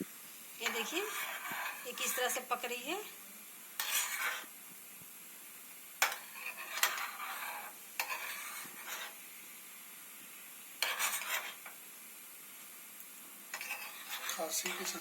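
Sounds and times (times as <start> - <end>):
faint steady hiss: 0.0 - 15.0
spoon stirring and scraping pan: 0.6 - 3.2, 3.8 - 4.8, 6.0 - 9.6, 10.3 - 11.8, 13.5 - 15.0.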